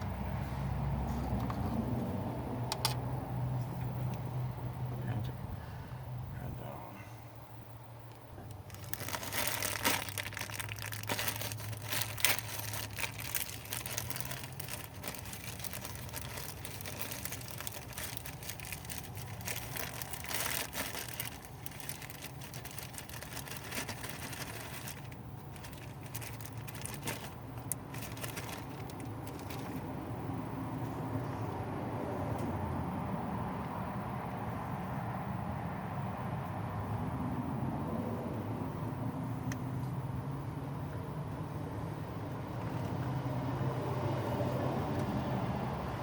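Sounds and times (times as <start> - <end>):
rustling and crinkling: 8.4 - 30.0.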